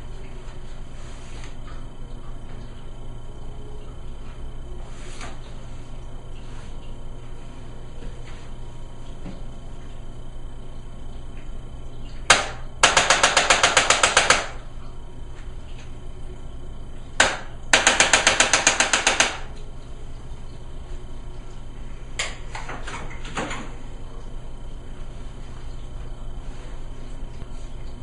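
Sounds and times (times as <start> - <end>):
rapid mechanical clicks: 12.3 - 14.6, 17.2 - 19.5.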